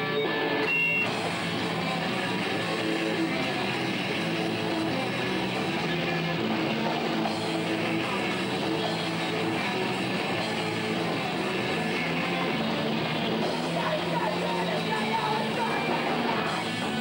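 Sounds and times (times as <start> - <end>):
distorted electric guitar: 0.0 - 17.0
drums: 0.0 - 17.0.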